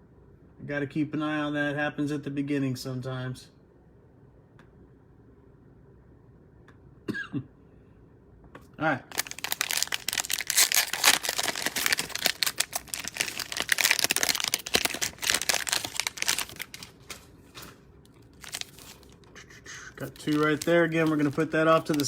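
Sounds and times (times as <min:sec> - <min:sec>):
cellophane wrapper crinkling: 0:09.1 - 0:22.0.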